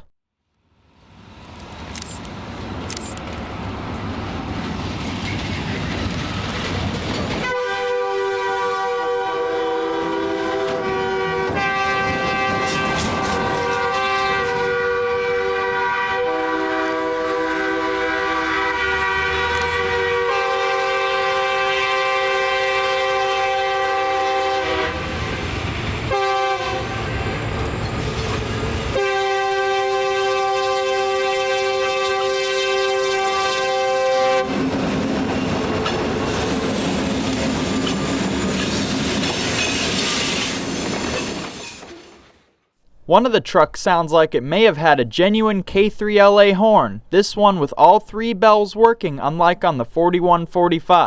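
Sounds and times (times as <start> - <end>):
passing train rumble: 0.8 - 42.2
truck air horns: 7.4 - 25.1, 26.1 - 27.2, 28.9 - 34.6
locomotive horn: 7.4 - 25.5, 26.1 - 34.8.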